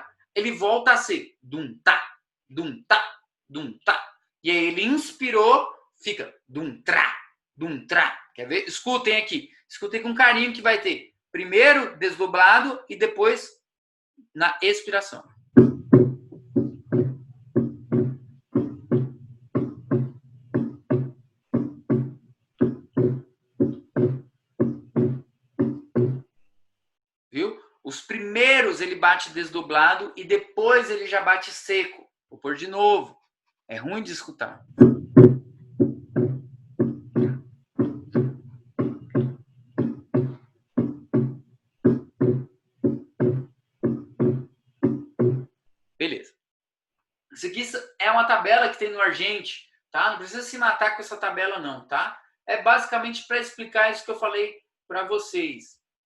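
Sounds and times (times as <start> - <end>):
heartbeat lub-dub: 15.4 - 26.3, 34.6 - 45.5.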